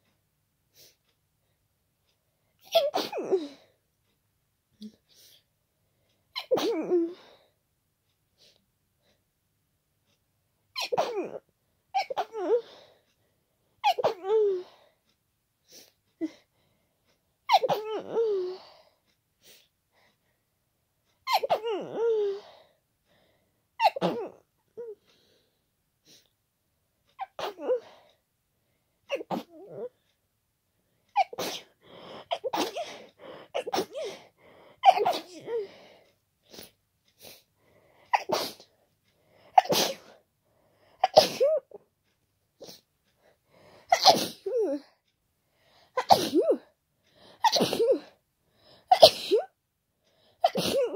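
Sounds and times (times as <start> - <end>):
person sneezing: 34.8 - 35.6, 38.1 - 38.7, 39.6 - 40.2, 41.0 - 41.6, 43.9 - 44.8, 46.0 - 46.6, 47.4 - 48.1.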